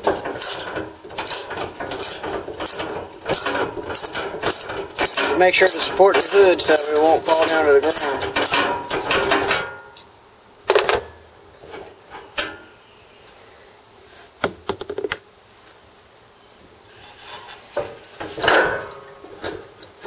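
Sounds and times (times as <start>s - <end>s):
metal parts handled: 0.0s - 10.1s
socket wrench clicking: 0.4s - 8.6s.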